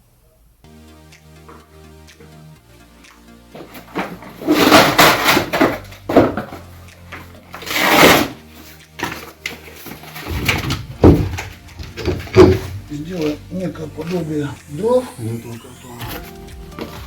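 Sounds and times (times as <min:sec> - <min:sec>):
cardboard tearing: 0:07.5 - 0:08.4
heavy knocks: 0:10.3 - 0:13.0.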